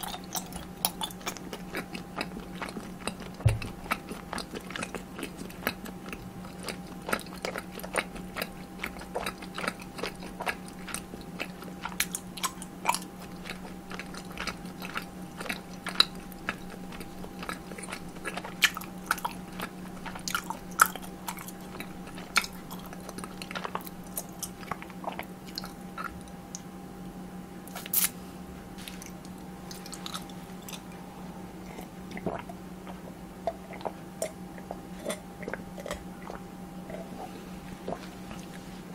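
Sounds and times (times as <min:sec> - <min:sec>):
crunchy chewing and biting: 0:00.0 - 0:26.6, 0:27.7 - 0:28.2, 0:28.8 - 0:38.7
low electrical hum: 0:00.0 - 0:38.9.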